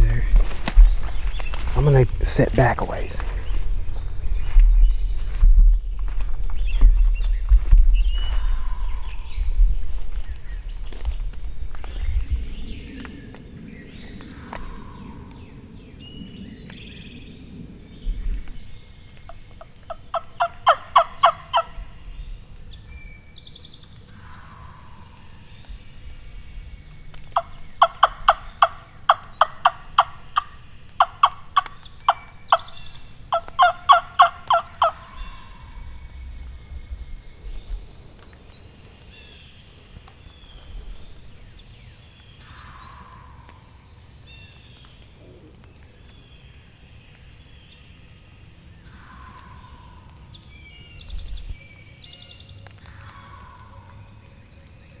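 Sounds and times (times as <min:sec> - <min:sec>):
faint songbirds singing: 0:00.0 - 0:55.0
turkey yelping: 0:33.3 - 0:35.7.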